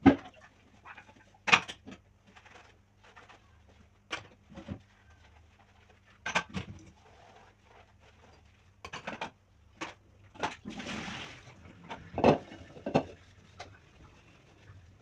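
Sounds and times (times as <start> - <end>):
dishes knocking and clinking: 6.2 - 6.8, 8.8 - 10.6, 11.9 - 13.8.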